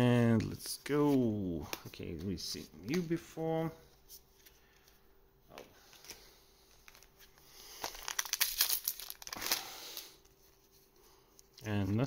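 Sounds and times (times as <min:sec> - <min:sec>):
wrapper crinkling: 0:05.9 - 0:10.6.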